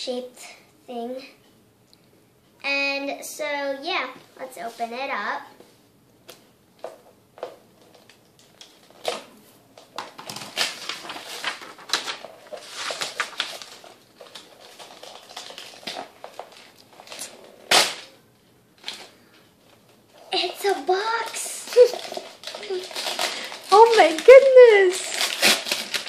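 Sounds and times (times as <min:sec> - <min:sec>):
sharp paper snap: 0:10.1 - 0:14.5, 0:17.1 - 0:18.2, 0:22.6 - 0:26.0
wrapping paper tearing and crumpling: 0:10.2 - 0:18.2, 0:20.3 - 0:26.0.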